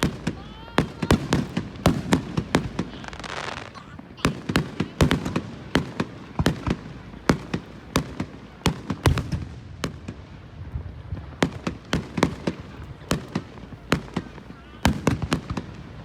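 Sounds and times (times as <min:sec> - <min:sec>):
fireworks bangs and cracks: 0:00.0 - 0:16.0.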